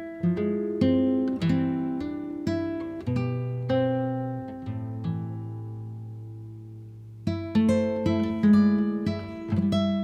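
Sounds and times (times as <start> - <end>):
acoustic guitar plucked: 0.0 - 10.0.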